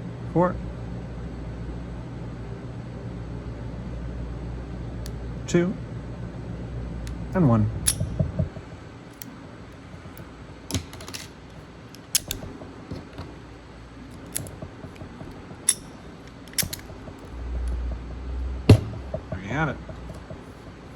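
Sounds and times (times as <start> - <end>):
padlock metallic clicks: 7.8 - 8.2, 9.1 - 9.4, 10.1 - 13.3, 14.1 - 17.8
low rumble: 16.7 - 20.9.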